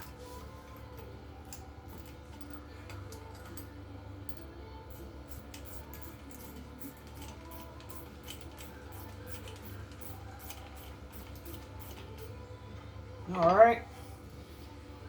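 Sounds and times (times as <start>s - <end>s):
ratchet wrench clicking: 4.3s - 12.3s.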